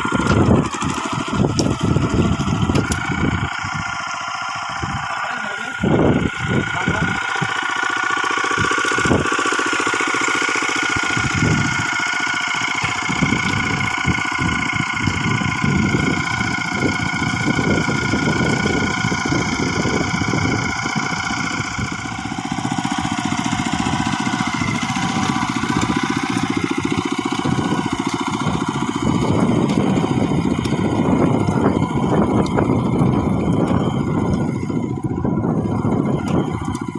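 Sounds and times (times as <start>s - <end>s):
small engine running: 0.0s - 36.9s.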